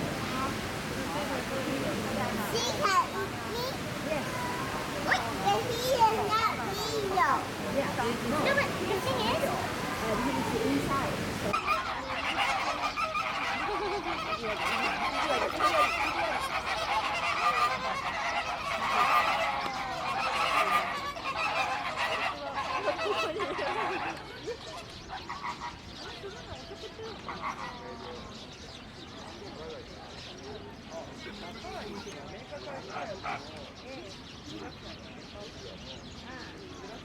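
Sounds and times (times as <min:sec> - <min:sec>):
birds honking: 0:00.0 - 0:26.1.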